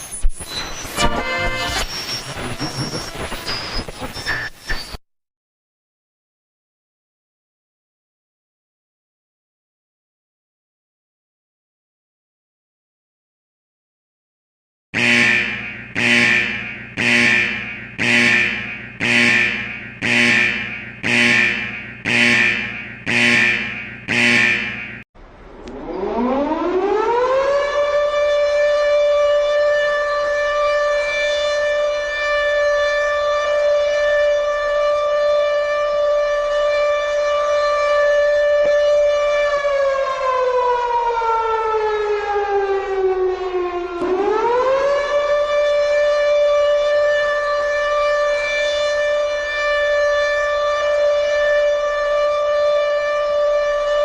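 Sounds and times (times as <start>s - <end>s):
pulsing alert tone: 0.4s - 4.3s
air-raid siren wailing: 0.6s - 3.7s, 15.0s - 54.0s.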